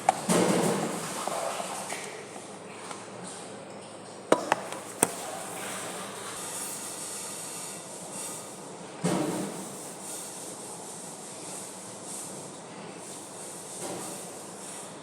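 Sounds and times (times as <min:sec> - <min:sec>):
hard objects clicking together: 0:04.3 - 0:05.7.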